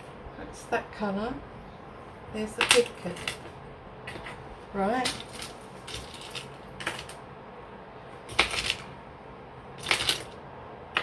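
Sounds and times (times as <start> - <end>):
jewellery clicking and rattling: 2.5 - 7.3, 8.2 - 9.0, 9.8 - 10.4.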